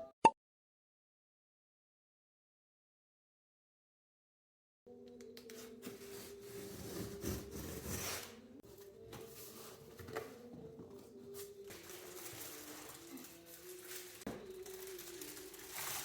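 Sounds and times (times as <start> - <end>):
rubbing and scraping: 5.7 - 8.4.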